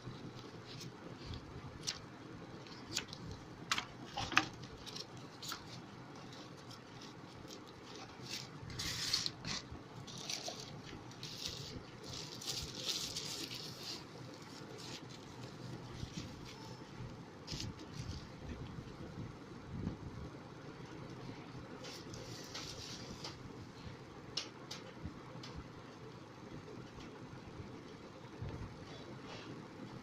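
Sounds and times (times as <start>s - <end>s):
packaging rustling: 0.1s - 18.4s.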